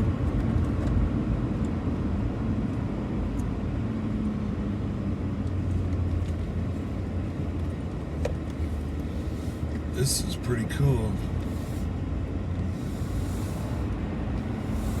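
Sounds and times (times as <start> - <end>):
road noise: 0.0 - 15.0
truck engine drone: 4.0 - 15.0.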